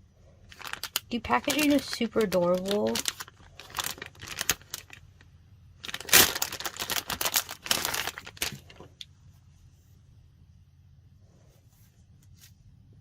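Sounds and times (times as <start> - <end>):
plastic packaging crinkling: 0.4 - 5.2, 5.8 - 9.0.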